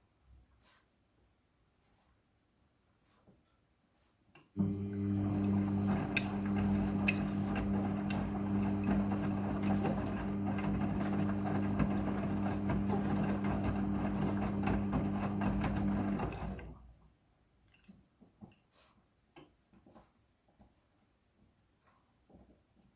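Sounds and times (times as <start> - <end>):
washing machine electric hum: 4.6 - 17.0.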